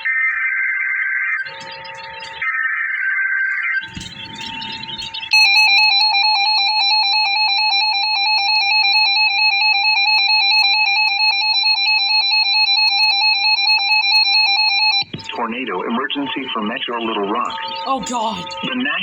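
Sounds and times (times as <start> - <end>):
warbling electronic alert tone: 3.8 - 11.4, 17.2 - 19.0.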